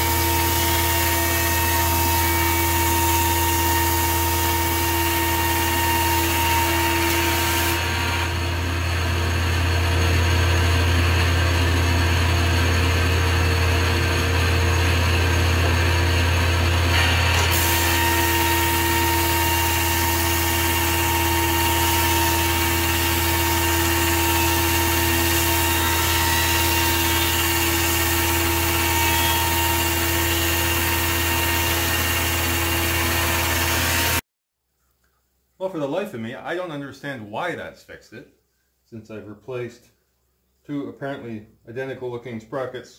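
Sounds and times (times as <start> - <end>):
dust collector humming: 0.0 - 34.2
planer running: 0.0 - 34.2.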